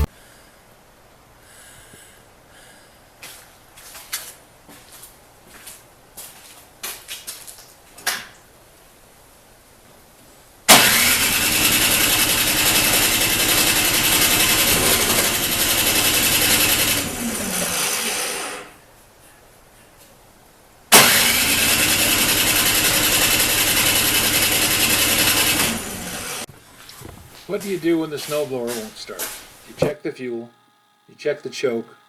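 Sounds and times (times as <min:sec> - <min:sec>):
snowblower engine cranking: 0:10.7 - 0:18.7, 0:20.9 - 0:29.8.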